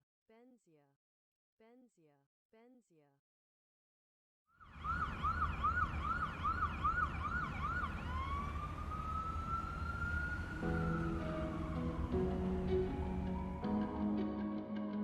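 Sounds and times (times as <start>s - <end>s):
electronic siren-like wail: 4.6s - 14.2s.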